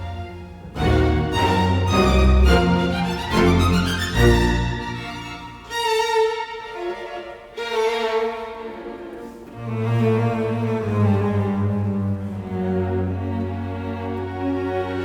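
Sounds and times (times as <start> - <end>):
cello holding low notes: 0.0 - 5.8, 7.0 - 15.0
slow bowed strings: 0.0 - 15.0.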